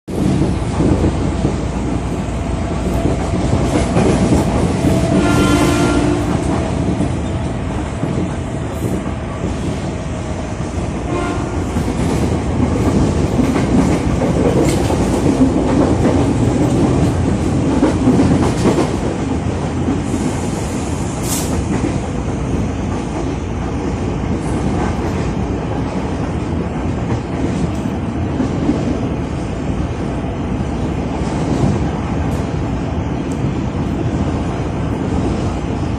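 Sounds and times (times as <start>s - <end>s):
electric train rumbling: 0.1s - 35.9s
train horn: 5.0s - 6.6s, 11.0s - 11.9s.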